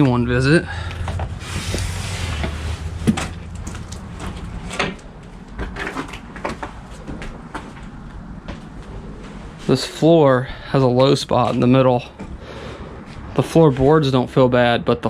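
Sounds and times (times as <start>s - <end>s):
footsteps on wooden floorboards: 6.2s - 9.5s.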